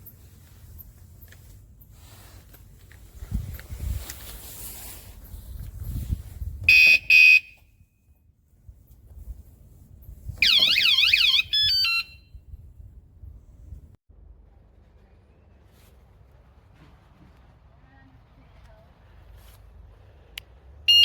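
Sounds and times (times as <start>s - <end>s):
warbling alarm siren: 10.4s - 12.3s.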